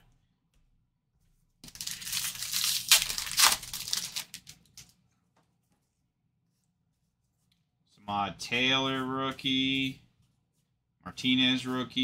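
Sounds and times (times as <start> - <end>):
wrapper tearing and crinkling: 1.6 - 4.8.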